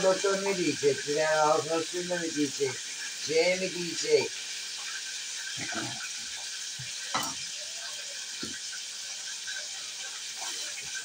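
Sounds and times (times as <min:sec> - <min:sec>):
food sizzling in a frying pan: 0:00.0 - 0:11.0.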